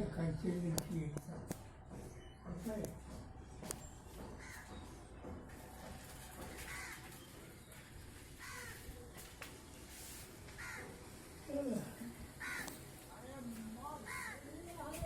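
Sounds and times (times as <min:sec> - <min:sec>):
low background noise: 0:00.0 - 0:15.0
crow cawing: 0:06.6 - 0:07.1, 0:08.4 - 0:08.9, 0:10.6 - 0:11.0, 0:12.4 - 0:12.8, 0:14.0 - 0:14.6.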